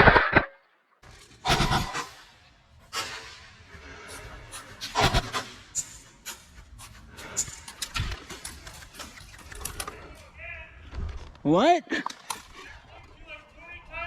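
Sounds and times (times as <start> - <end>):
loud burst: 1.4 - 2.3, 5.0 - 5.6.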